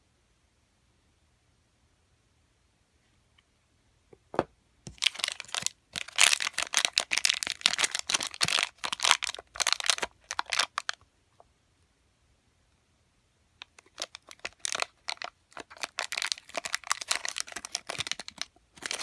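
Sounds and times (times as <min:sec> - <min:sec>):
packaging crinkling and tearing: 0:04.9 - 0:11.0, 0:13.7 - 0:19.0.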